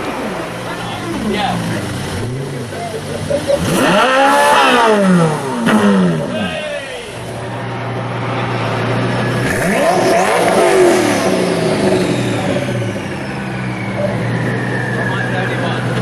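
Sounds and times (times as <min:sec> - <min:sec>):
car engine accelerating: 0:00.0 - 0:16.0.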